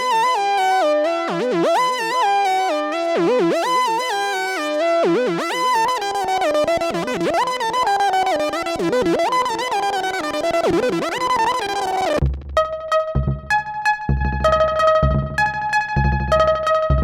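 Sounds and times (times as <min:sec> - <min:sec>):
synthesizer gliding lead line: 0:05.3 - 0:17.0
synth bass notes: 0:05.9 - 0:17.0.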